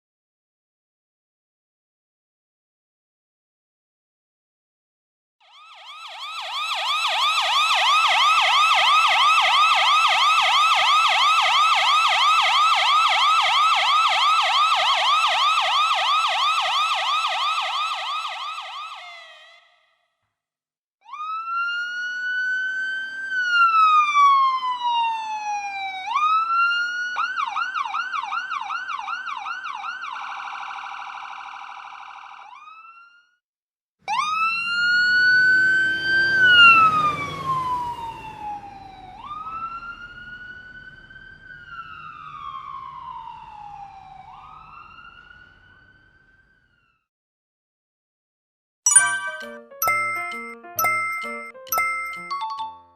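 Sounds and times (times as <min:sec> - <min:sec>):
ambulance siren wail: 0:05.4 - 0:19.8, 0:21.0 - 0:33.3, 0:34.1 - 0:46.8
ambulance siren yelp: 0:05.4 - 0:19.9, 0:21.0 - 0:33.4, 0:34.1 - 0:47.0.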